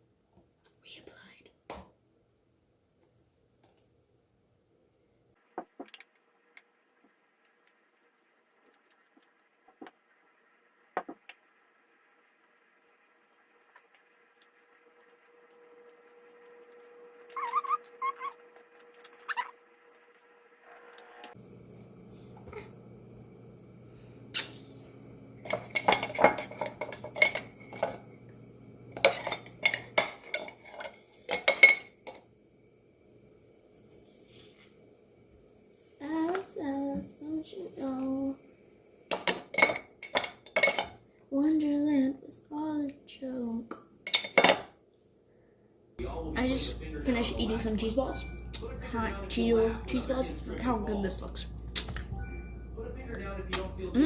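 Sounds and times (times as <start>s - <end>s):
low steady hum: 21.3s - 54.0s.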